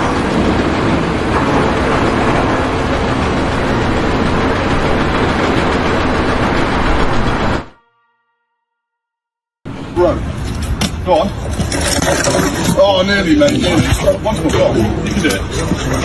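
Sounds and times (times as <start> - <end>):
loud machinery with low rumble: 0.0 - 7.8, 9.7 - 16.0.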